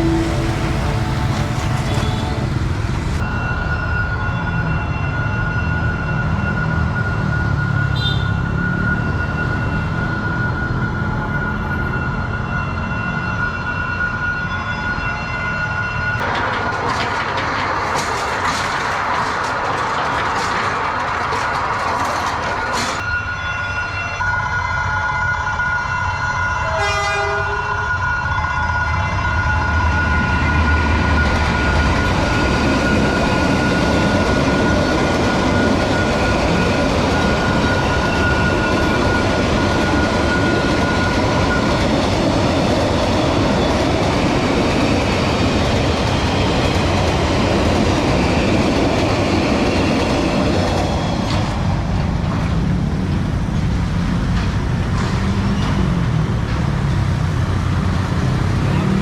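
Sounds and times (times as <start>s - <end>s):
train horn blast: 0.0s - 3.2s, 24.5s - 31.8s
locomotive engine rumble: 0.0s - 4.5s, 16.2s - 23.0s, 30.8s - 59.0s
steady high tone: 0.0s - 7.9s
carriages rumbling and rattling: 0.0s - 13.2s, 16.1s - 23.1s, 29.9s - 59.0s.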